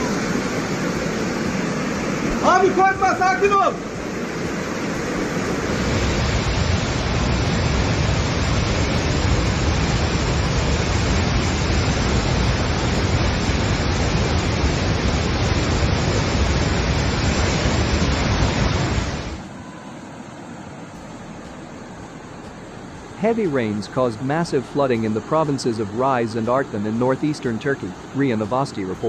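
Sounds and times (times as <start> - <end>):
deep rumble of water: 0.0 - 19.9
floodwater rushing: 0.0 - 29.0.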